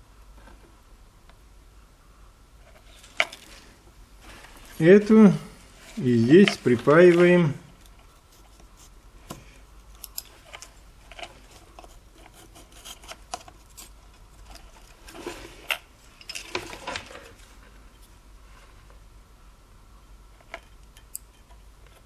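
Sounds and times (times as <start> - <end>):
small electronic parts clicking: 9.9 - 11.3.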